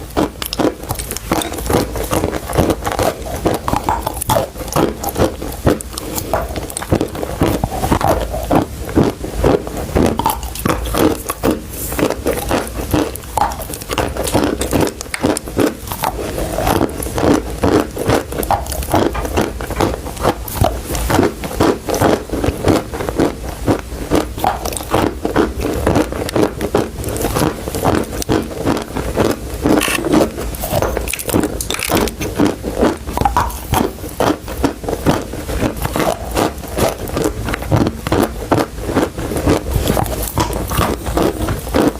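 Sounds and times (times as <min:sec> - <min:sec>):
chewing crunchy chalk: 0:00.0 - 0:41.9.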